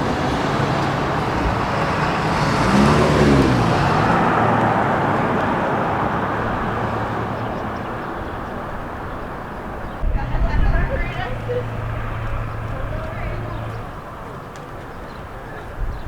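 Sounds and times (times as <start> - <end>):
vehicle passing close: 0.0 - 8.0, 10.0 - 14.4
steady road noise: 0.0 - 16.0.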